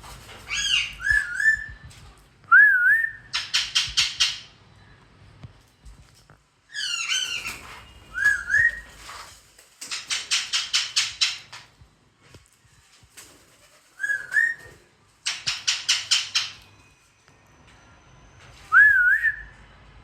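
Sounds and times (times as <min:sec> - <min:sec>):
parrots screeching: 0:00.5 - 0:01.6, 0:06.7 - 0:08.7
wavering whistled notes: 0:07.2 - 0:08.9, 0:16.8 - 0:19.7.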